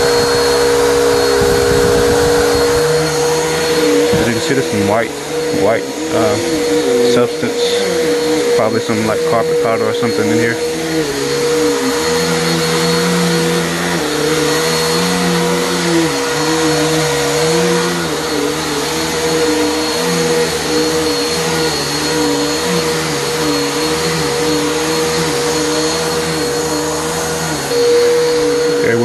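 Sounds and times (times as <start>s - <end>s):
vacuum cleaner on carpet: 0.0s - 29.0s.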